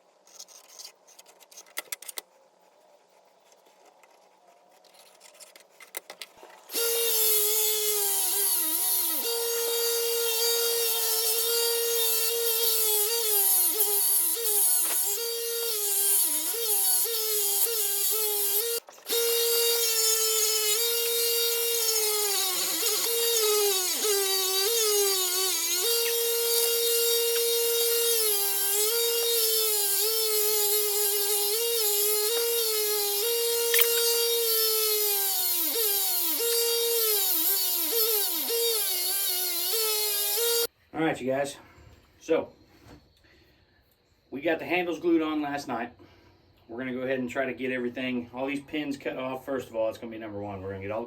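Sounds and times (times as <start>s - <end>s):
electric power tool motor whining: 6.7s - 40.7s.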